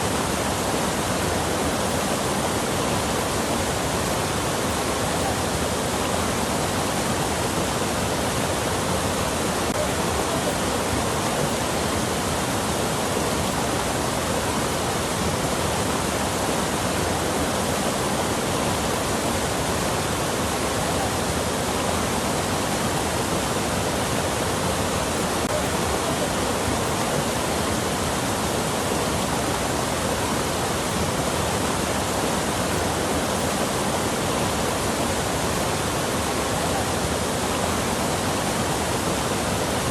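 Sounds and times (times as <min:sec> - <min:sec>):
rushing water: 0:00.0 - 0:39.9.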